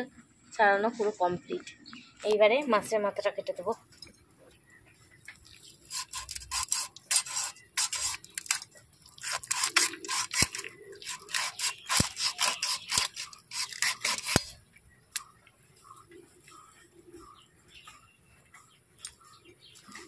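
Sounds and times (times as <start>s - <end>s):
blade sawing and scraping: 5.8s - 14.6s.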